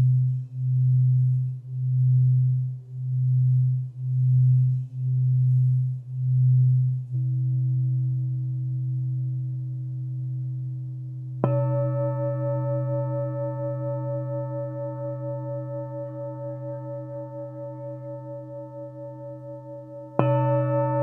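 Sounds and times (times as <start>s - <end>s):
singing bowl low hum: 0.0s - 21.0s
singing bowl struck ringing: 11.4s - 21.0s.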